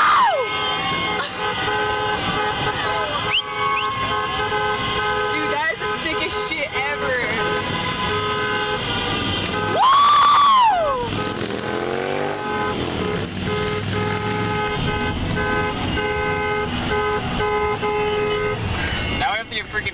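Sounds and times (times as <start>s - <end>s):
car horns honking: 0.0s - 19.9s
traffic noise: 0.0s - 19.9s.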